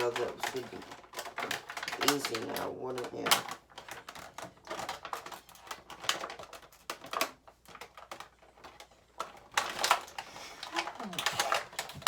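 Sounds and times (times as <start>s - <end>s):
plastic packaging crinkling: 0.0s - 12.0s.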